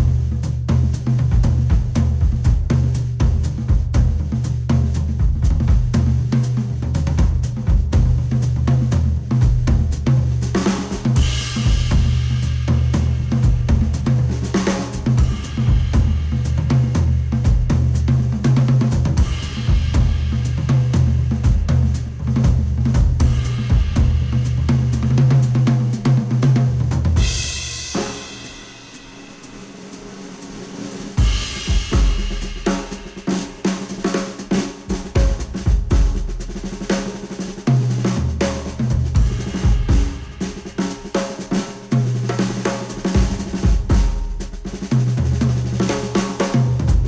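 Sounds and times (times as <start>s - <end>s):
heavy bass: 0.0s - 28.7s, 31.2s - 33.2s, 37.8s - 40.8s, 42.0s - 46.0s, 46.6s - 47.0s
drum kit: 0.0s - 47.0s
sustained music layer: 10.5s - 44.9s.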